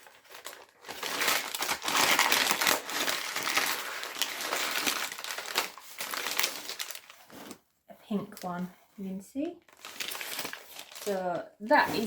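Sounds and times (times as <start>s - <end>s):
packaging crackling and crunching: 0.0s - 7.6s, 9.7s - 11.4s.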